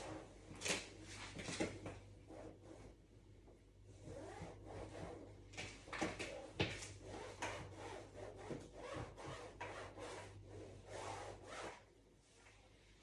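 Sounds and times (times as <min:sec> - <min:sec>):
cloth rubbing on casing: 0:04.0 - 0:05.3, 0:06.3 - 0:11.8.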